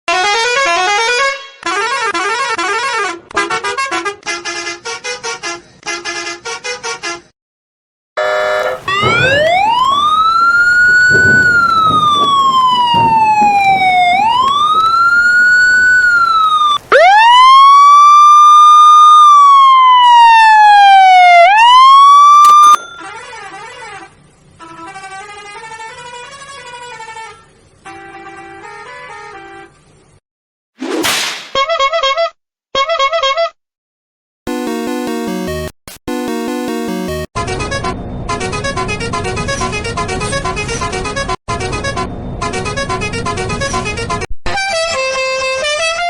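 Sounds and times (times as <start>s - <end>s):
loud sweeping siren: 8.2s - 22.8s
siren wailing: 8.2s - 22.8s
fast warbling siren: 8.2s - 23.0s.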